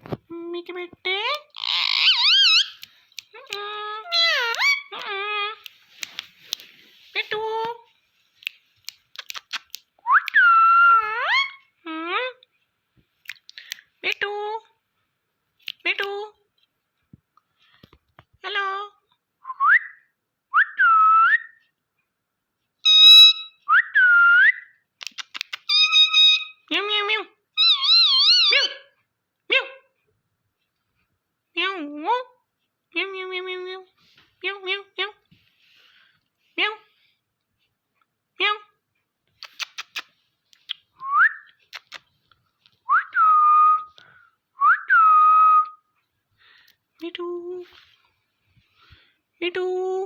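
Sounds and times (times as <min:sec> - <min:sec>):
harsh buzzy parrot call: 0:01.5 - 0:02.9, 0:04.0 - 0:05.7, 0:22.8 - 0:24.6, 0:25.2 - 0:26.7, 0:27.6 - 0:28.9
parrot whistling: 0:01.6 - 0:02.8, 0:22.8 - 0:24.7, 0:25.7 - 0:26.6, 0:27.6 - 0:28.7
sharp clicks: 0:08.4 - 0:10.4, 0:25.0 - 0:25.7, 0:39.4 - 0:40.9, 0:41.6 - 0:42.2.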